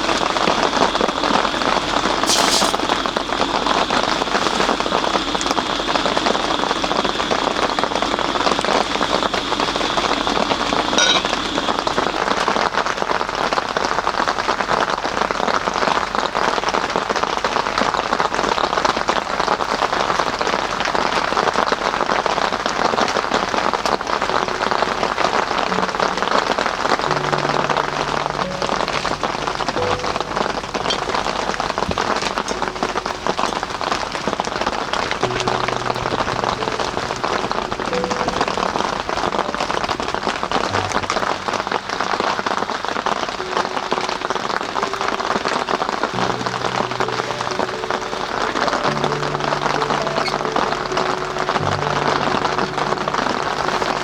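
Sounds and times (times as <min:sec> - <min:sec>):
thin high tone: 0:00.0 - 0:12.4, 0:24.2 - 0:54.0
steady rain falling: 0:00.0 - 0:54.0.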